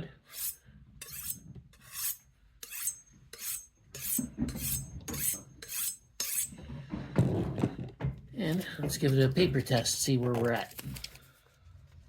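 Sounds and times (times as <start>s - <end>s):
knife scraping on honing rod: 0.3s - 6.6s.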